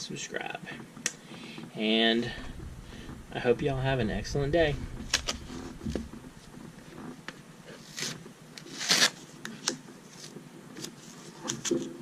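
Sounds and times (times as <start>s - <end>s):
rustling scrapes: 2.2s - 9.2s.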